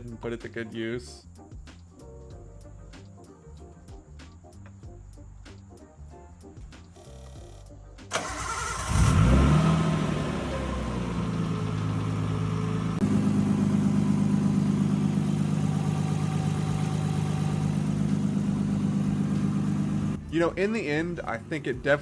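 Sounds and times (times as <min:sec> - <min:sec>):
engine cranking on starter: 0:08.1 - 0:12.2
car engine idling: 0:08.1 - 0:21.6.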